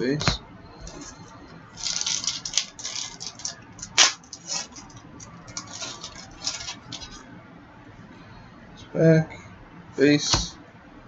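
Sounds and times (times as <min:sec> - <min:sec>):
cards being handled: 0:01.8 - 0:07.2
wrapper tearing and crackling: 0:01.8 - 0:07.2.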